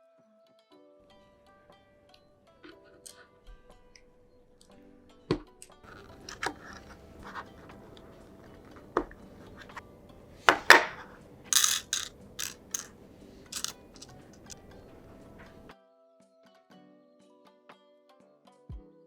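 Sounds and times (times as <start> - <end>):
packaging rustling: 5.9 - 15.7
plastic pieces clicking and tapping: 5.9 - 15.7.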